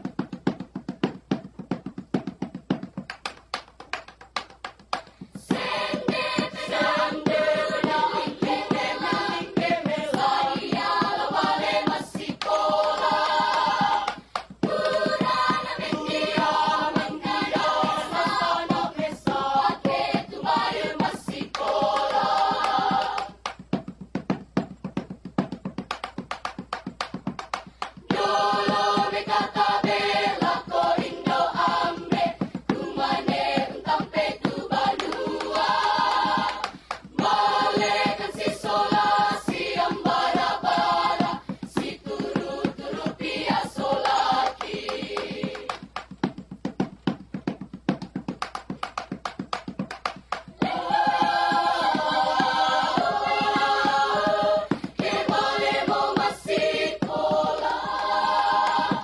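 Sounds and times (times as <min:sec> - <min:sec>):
fast percussive beat: 0:00.0 - 0:59.0
choir singing in harmony: 0:05.4 - 0:23.6, 0:28.0 - 0:46.1, 0:50.6 - 0:59.0.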